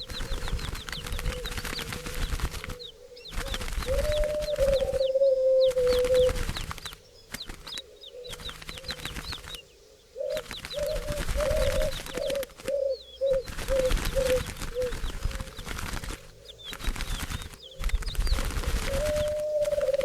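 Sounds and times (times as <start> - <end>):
doves cooing: 0.0 - 20.0
small birds chirping: 0.0 - 20.0.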